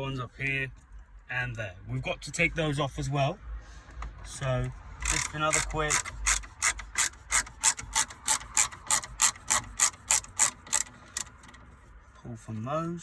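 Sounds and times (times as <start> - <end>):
ratchet driver clicking: 4.6 - 11.8.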